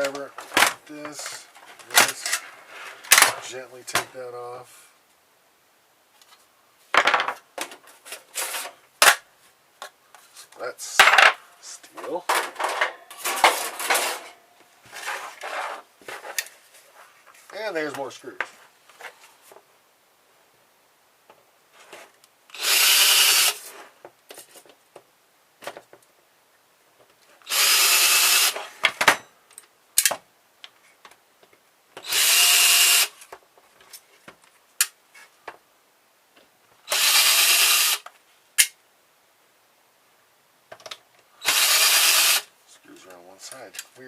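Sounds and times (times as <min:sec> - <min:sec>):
power screwdriver whirring: 0:22.5 - 0:23.7, 0:27.5 - 0:28.7, 0:32.0 - 0:33.1, 0:36.9 - 0:38.0, 0:41.4 - 0:42.5.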